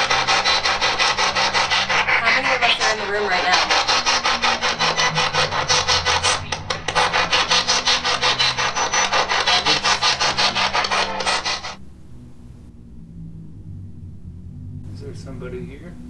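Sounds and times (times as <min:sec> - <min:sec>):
radio static pulsing: 0:00.0 - 0:12.7.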